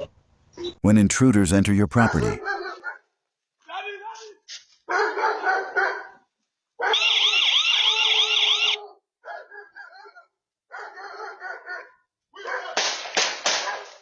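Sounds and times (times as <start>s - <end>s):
electronic alarm siren warbling: 7.0s - 8.8s.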